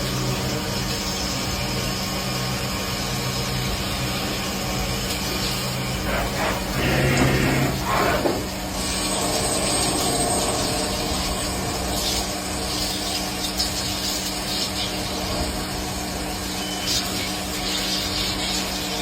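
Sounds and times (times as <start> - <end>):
machine motor hum: 5.4 - 13.5.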